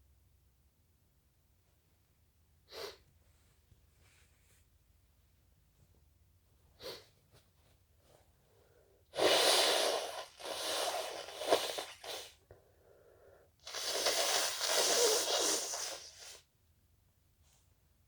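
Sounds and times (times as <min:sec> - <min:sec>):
noisy breath through nose: 0:08.5 - 0:16.5.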